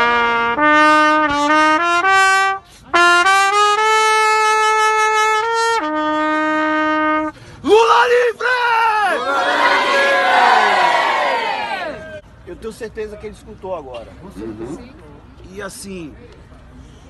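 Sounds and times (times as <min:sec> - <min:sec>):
solo trumpet melody: 0:00.0 - 0:07.3.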